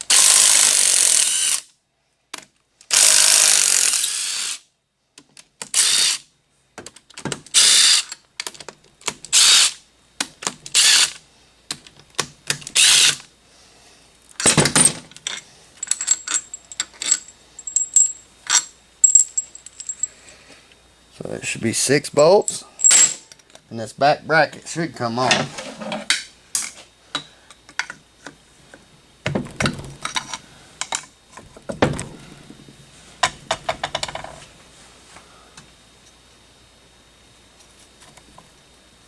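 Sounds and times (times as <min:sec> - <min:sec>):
small metallic clinks: 0:15.2 - 0:20.2.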